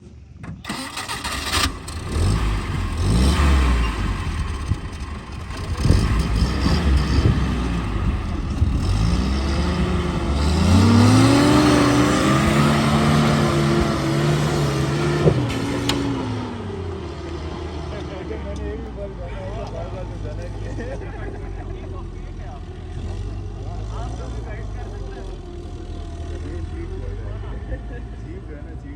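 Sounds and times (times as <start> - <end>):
jeep engine revving under load: 0.7 - 18.1.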